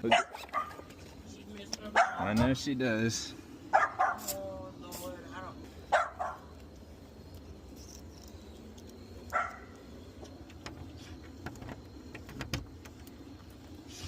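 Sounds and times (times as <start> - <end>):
dog barking: 0.0 - 0.9, 1.9 - 2.3, 3.7 - 4.3, 5.9 - 6.5, 9.3 - 9.7.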